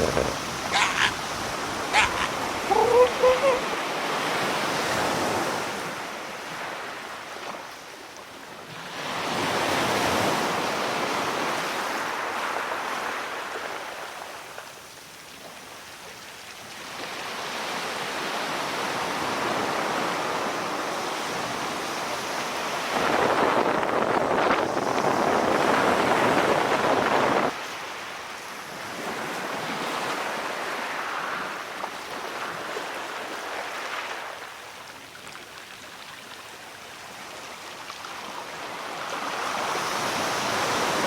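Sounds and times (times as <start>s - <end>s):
ocean waves washing: 0.0s - 4.6s.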